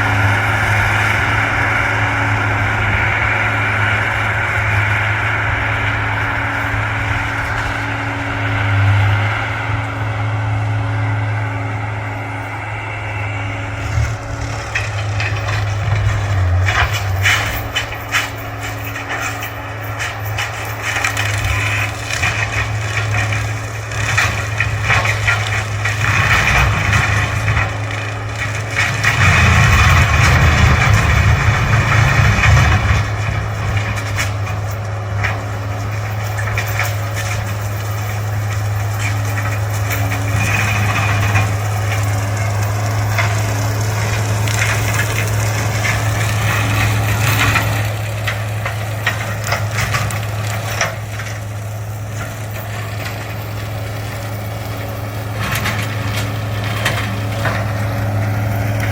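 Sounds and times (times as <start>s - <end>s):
diesel engine under load: 0.0s - 58.9s
brush cracking and snapping: 14.0s - 58.9s.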